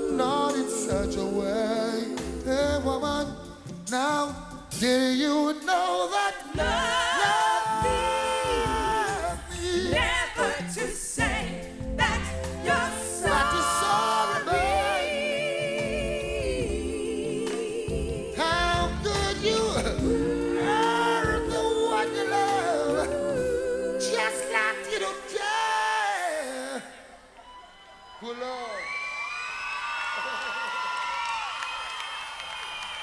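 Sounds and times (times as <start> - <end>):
bass line: 6.6 - 17.1, 17.9 - 23.8.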